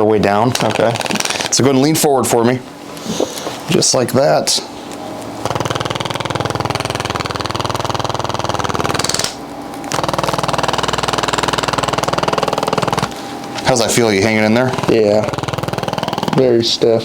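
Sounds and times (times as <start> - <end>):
impulse instrument tapping rapidly: 5.4 - 16.8.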